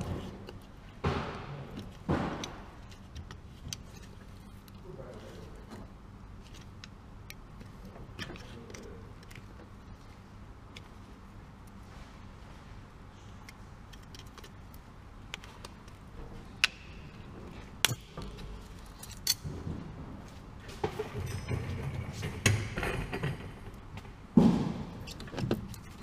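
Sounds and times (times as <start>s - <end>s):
metal parts clattering and knocking: 17.8s - 19.7s, 20.7s - 24.0s.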